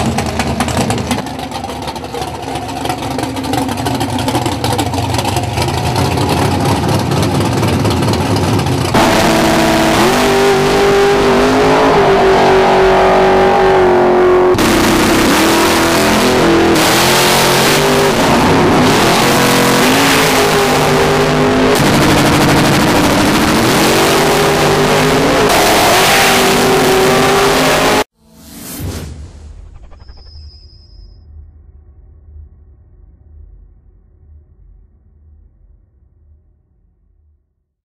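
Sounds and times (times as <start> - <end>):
race car engines revving: 0.0 - 28.1.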